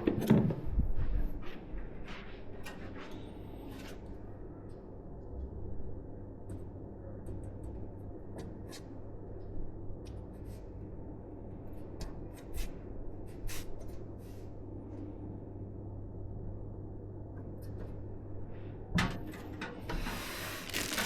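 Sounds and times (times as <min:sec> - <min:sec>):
steady low hum: 0:00.0 - 0:18.9.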